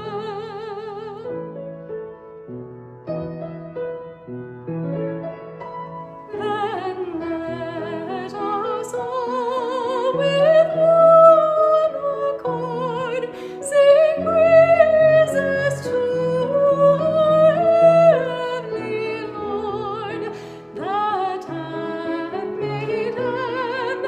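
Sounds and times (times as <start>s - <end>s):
piano playing chords: 0.0s - 24.0s
operatic singer with vibrato: 6.3s - 24.0s.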